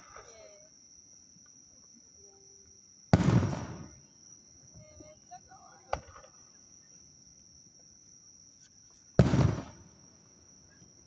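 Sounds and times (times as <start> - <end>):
insects chirring: 0.0 - 11.0
firework boom with rumble: 3.1 - 4.0, 9.2 - 9.9.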